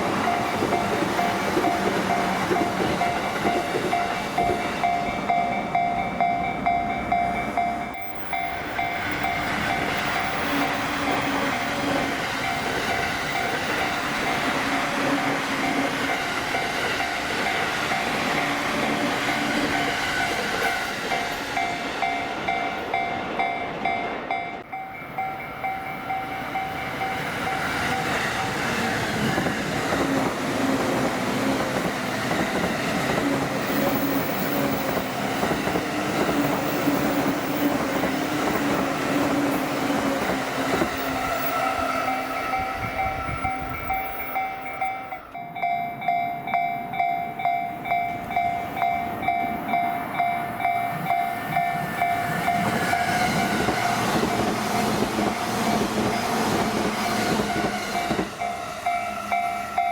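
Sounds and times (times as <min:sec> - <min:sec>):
level-crossing warning bell: 0:00.0 - 0:30.4, 0:31.0 - 0:59.9.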